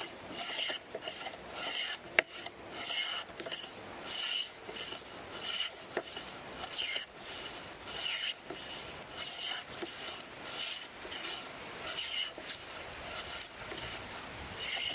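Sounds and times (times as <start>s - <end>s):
hand plane shaving wood: 0.0s - 14.9s.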